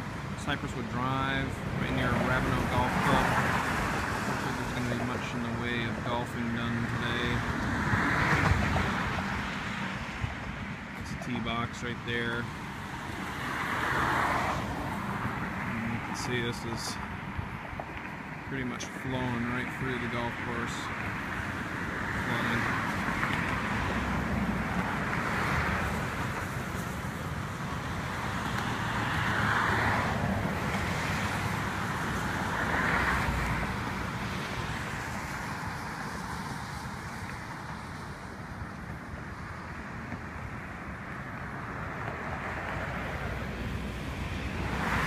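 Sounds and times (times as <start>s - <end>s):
tyres hissing on wet road: 0.0s - 5.6s, 12.5s - 17.4s, 20.7s - 45.0s.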